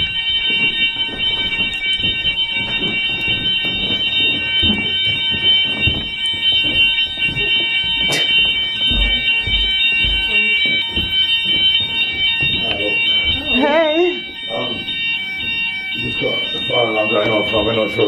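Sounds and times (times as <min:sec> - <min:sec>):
shuffling and handling noise: 0:00.0 - 0:13.5
fire alarm high-pitched tone: 0:00.0 - 0:18.0.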